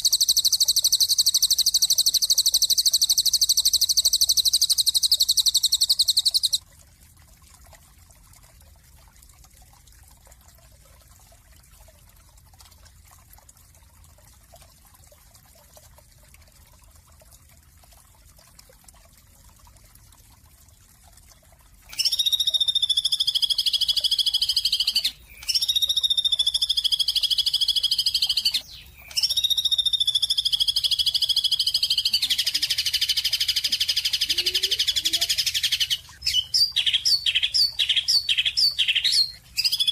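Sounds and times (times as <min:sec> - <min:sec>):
high-pitched bird trills: 0:00.0 - 0:06.6, 0:21.9 - 0:39.9.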